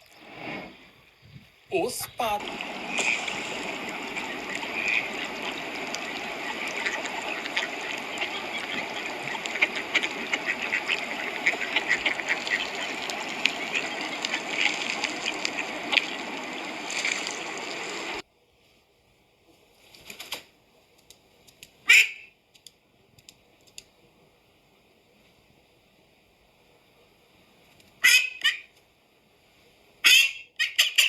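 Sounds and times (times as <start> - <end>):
ducks quacking: 2.4 - 18.2.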